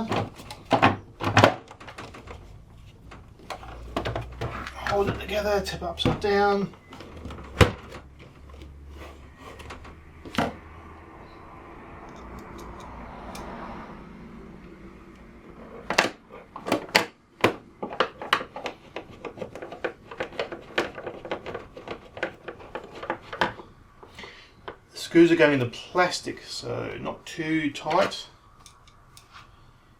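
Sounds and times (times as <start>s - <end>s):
sharp plastic clicks and knocks: 15.9s - 24.8s.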